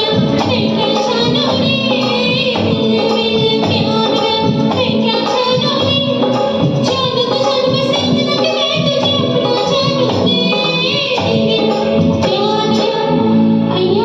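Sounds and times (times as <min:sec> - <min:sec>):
instrumental accompaniment: 0:00.0 - 0:14.0
woman singing: 0:00.0 - 0:14.0.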